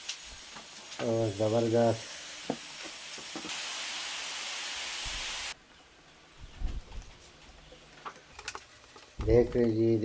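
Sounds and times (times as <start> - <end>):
steady hiss: 0.0 - 5.6.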